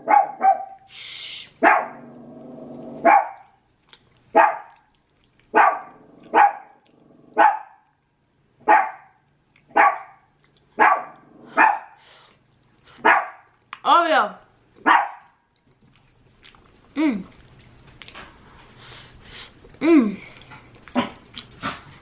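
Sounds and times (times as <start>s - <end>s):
dog barking: 0.0s - 0.9s, 1.6s - 2.0s, 3.0s - 3.6s, 4.3s - 4.8s, 5.5s - 6.8s, 7.4s - 7.9s, 8.6s - 12.0s, 13.0s - 13.5s, 14.8s - 15.4s.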